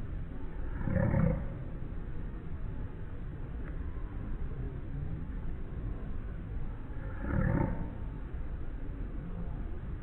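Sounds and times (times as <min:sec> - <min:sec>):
low rumbling animal call: 0:00.0 - 0:01.9, 0:06.8 - 0:08.4.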